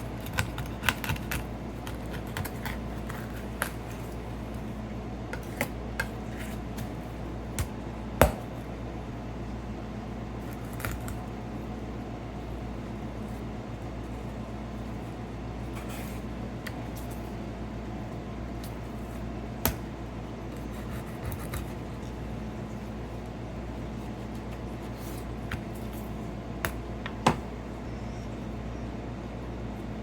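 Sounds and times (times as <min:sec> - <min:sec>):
knife scraping fish: 0:00.2 - 0:04.2, 0:20.6 - 0:22.1.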